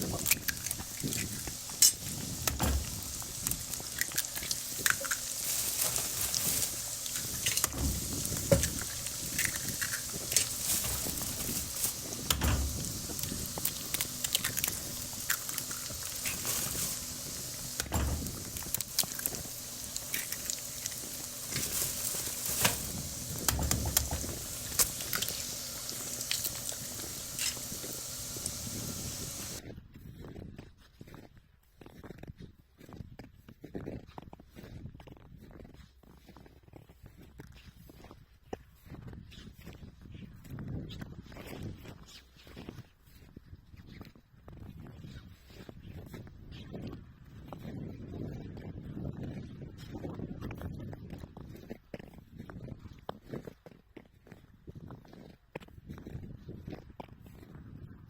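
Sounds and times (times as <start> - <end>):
eggs sizzling in a pan: 0.0 - 29.6
fat spattering pops: 0.0 - 29.6.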